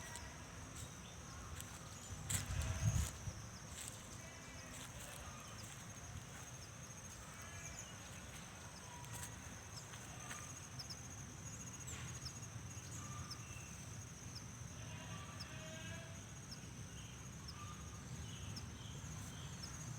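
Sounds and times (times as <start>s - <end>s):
insects trilling: 0.0s - 19.9s.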